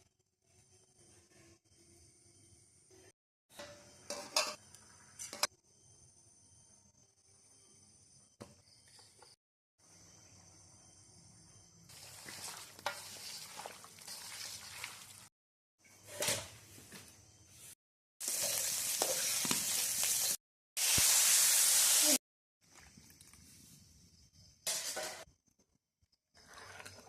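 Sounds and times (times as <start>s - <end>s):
food sizzling in a pan: 11.9s - 15.3s, 18.2s - 22.2s.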